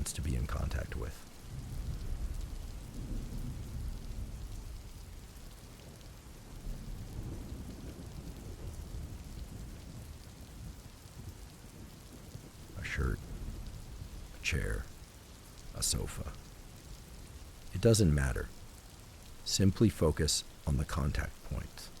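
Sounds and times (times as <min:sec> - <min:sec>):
steady rain hissing: 0:00.0 - 0:22.0
low rolling thunder: 0:01.4 - 0:17.8.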